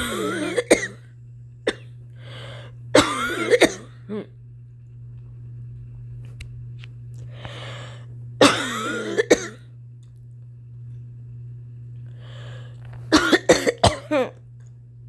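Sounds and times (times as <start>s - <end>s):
woman coughing: 0.0s - 1.0s, 1.7s - 1.9s, 3.0s - 4.3s, 8.4s - 9.6s, 13.1s - 14.4s
woman breathing in: 2.2s - 2.8s, 7.3s - 8.1s, 12.1s - 12.8s.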